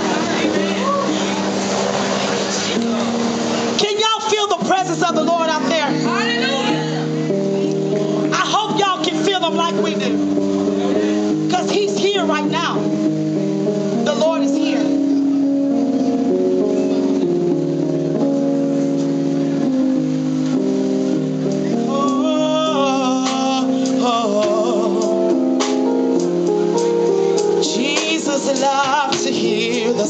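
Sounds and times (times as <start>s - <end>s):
held instrumental chords: 0.0s - 30.0s
solo voice singing with vibrato: 21.8s - 25.6s, 27.6s - 30.0s.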